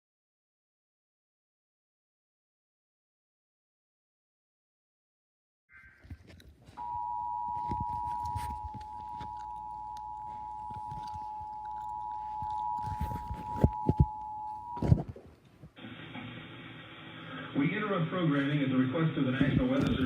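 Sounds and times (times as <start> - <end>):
two-tone alert signal: 6.8 - 15.0.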